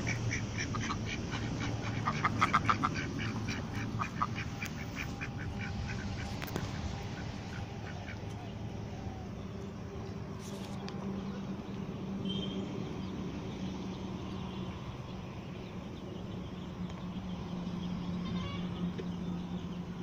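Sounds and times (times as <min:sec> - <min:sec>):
poultry calling: 0:00.0 - 0:08.5, 0:18.1 - 0:18.9
steady low hum: 0:00.0 - 0:20.0.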